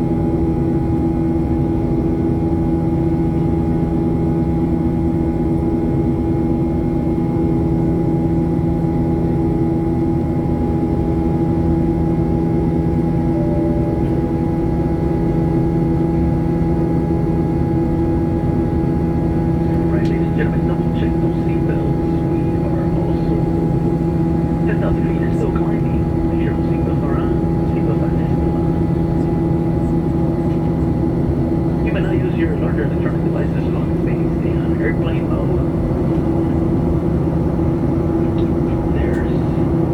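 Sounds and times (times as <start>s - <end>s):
jet cabin drone: 0.0s - 39.9s.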